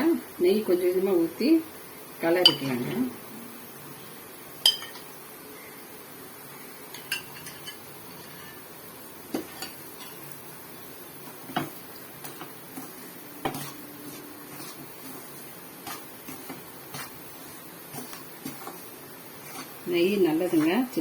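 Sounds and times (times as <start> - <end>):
spoon clinking against pot: 4.6 - 5.0, 6.9 - 7.8.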